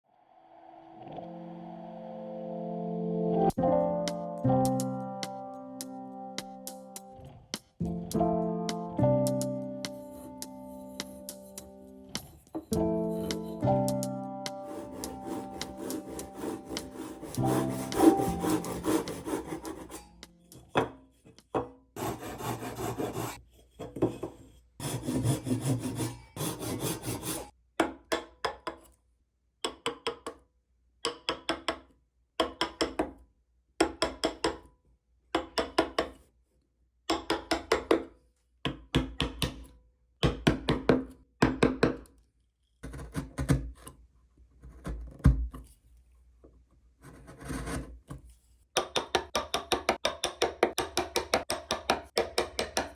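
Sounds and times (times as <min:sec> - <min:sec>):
hand saw cutting wood: 0:14.5 - 0:20.3, 0:22.0 - 0:23.4, 0:24.8 - 0:27.5.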